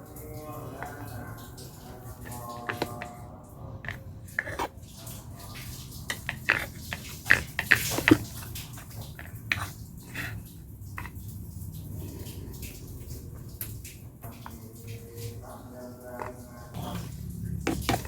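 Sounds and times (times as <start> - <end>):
utensils clicking and knocking: 6.0 - 9.8, 16.2 - 18.0.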